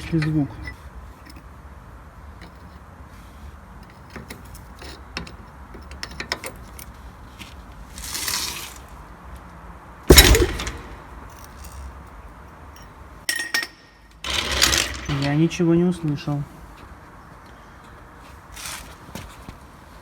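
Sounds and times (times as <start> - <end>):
car landing heavy thump: 10.1 - 11.1.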